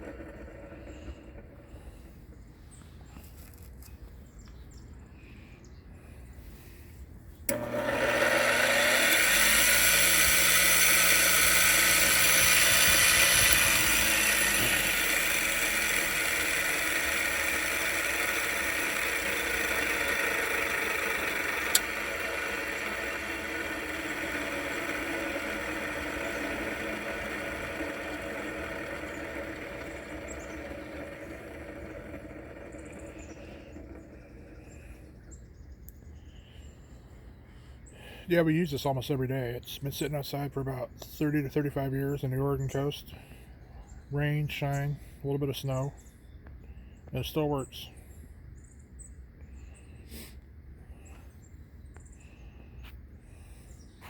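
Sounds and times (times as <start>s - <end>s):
bench grinder whirring: 0.0s - 2.1s, 7.5s - 35.4s.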